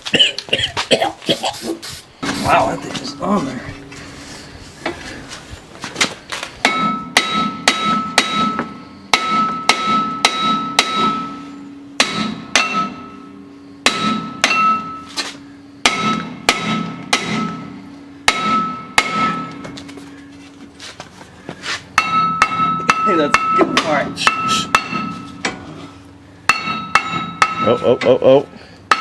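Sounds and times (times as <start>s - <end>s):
rotor ringing metallic tone: 2.2s - 5.7s, 6.6s - 20.3s, 21.9s - 29.0s
hammer striking metal rotor: 6.6s - 11.4s, 12.0s - 15.1s, 15.8s - 19.8s, 22.0s - 25.6s, 26.5s - 28.2s.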